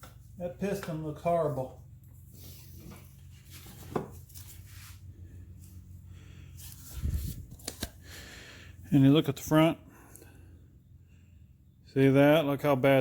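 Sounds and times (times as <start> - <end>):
steady low hum: 4.3 - 13.0.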